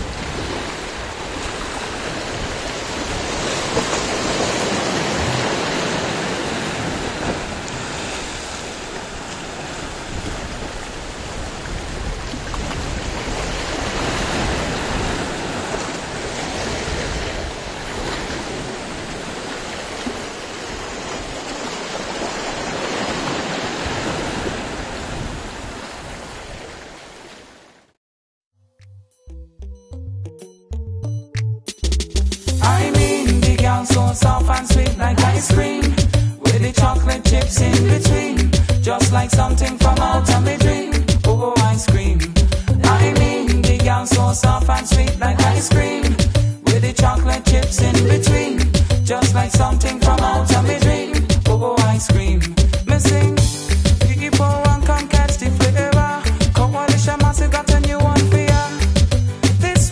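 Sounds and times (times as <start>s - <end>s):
sea water rushing: 0.0s - 27.9s, 32.6s - 52.8s
wind buffeting microphone: 9.8s - 19.3s.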